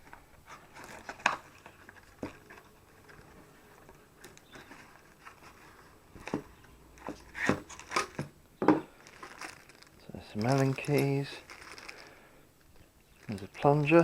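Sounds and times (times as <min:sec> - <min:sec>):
faint rustling: 0:00.0 - 0:14.0.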